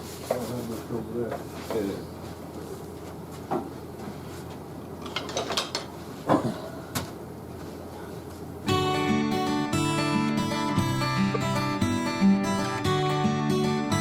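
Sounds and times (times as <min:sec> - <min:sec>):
acoustic guitar music: 0:08.6 - 0:14.0.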